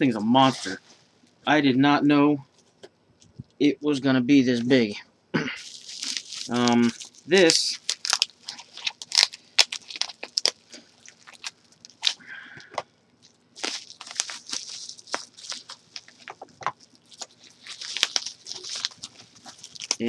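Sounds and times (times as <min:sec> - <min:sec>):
plastic wrap crinkling: 0:05.6 - 0:20.0.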